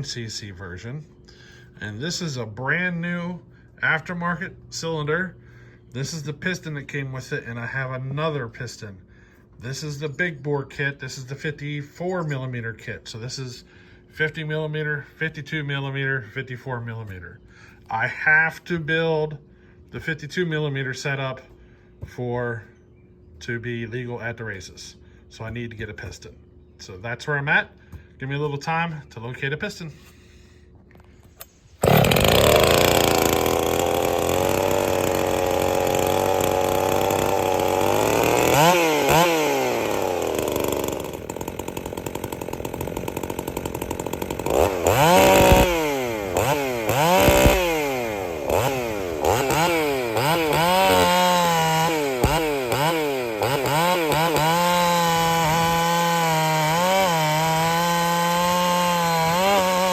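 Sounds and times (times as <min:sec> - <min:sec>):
chainsaw revving: 0:31.8 - 0:59.9.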